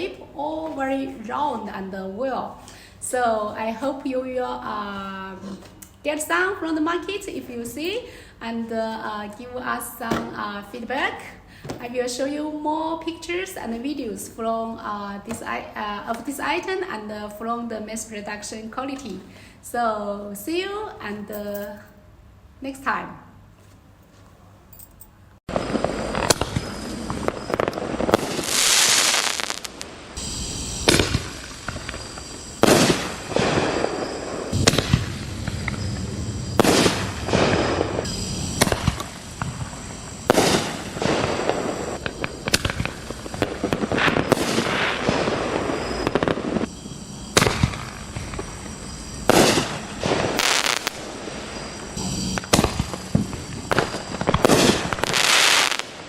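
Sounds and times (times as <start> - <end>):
firework shells bursting: 25.5 - 56.0.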